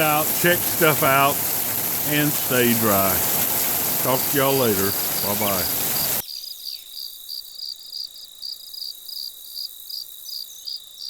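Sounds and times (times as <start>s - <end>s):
insect steady high trill: 0.0s - 8.3s
insect rhythmic chirp: 0.0s - 11.0s.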